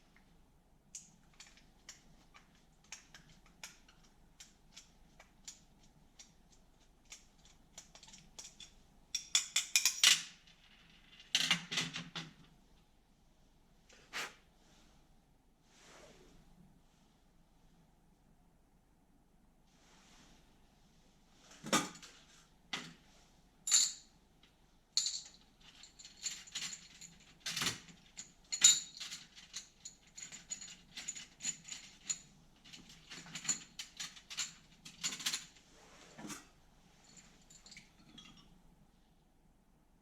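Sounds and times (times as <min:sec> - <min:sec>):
small metal parts clinking: 0:01.0 - 0:11.6, 0:23.7 - 0:24.1, 0:25.0 - 0:35.6.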